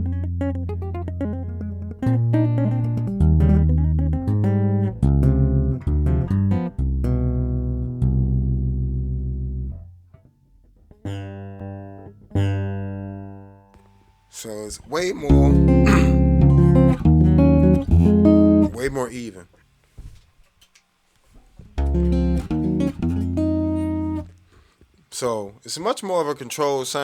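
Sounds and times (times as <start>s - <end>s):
tapped electric bass guitar: 0.0s - 13.8s, 14.5s - 19.2s, 21.6s - 24.4s.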